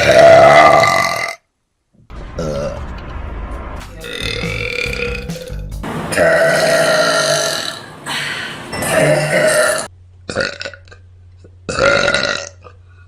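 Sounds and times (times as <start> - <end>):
woman burping: 4.0 - 11.0, 11.7 - 12.8.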